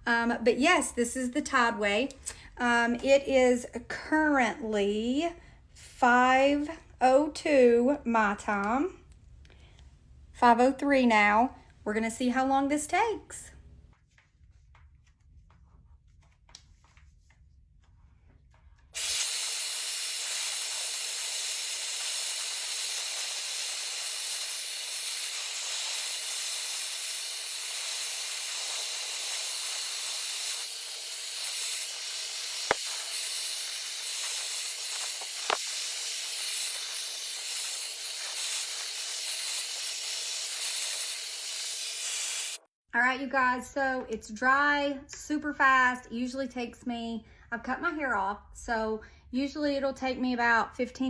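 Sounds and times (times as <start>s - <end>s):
hair dryer blowing: 19.0s - 42.7s.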